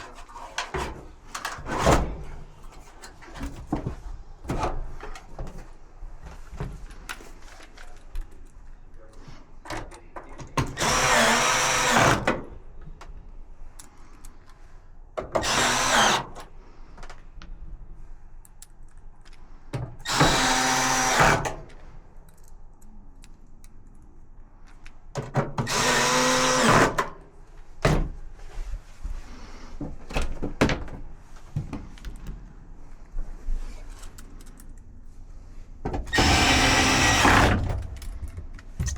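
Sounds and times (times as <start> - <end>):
clicks and knocks of tools: 6.9 - 10.9, 33.8 - 34.9
power drill driving screws: 10.8 - 12.4, 15.4 - 16.5, 20.0 - 21.6, 25.6 - 27.1, 36.1 - 37.9.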